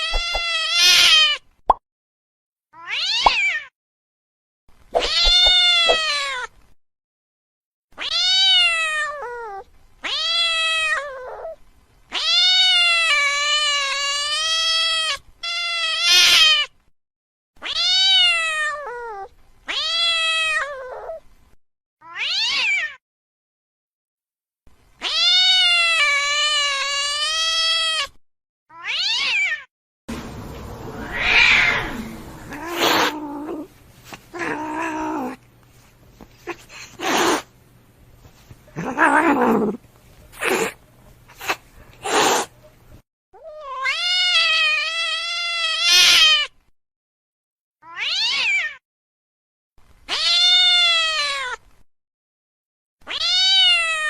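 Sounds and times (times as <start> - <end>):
cat yowling: 0.0 - 1.4, 2.8 - 3.7, 5.0 - 6.5, 8.0 - 16.7, 17.6 - 21.2, 22.0 - 23.0, 25.0 - 28.1, 28.7 - 29.7, 30.5 - 33.7, 34.3 - 35.4, 36.4 - 37.5, 38.7 - 42.5, 43.4 - 46.5, 47.8 - 48.8, 50.1 - 51.6, 53.1 - 54.0
rough noisy sound: 30.1 - 32.8.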